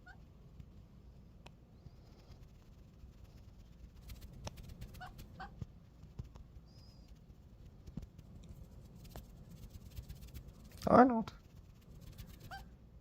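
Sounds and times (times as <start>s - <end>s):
kitten squeaking: 4.0s - 5.7s, 6.6s - 7.4s, 11.5s - 12.8s
kitten high chirp: 12.4s - 12.7s.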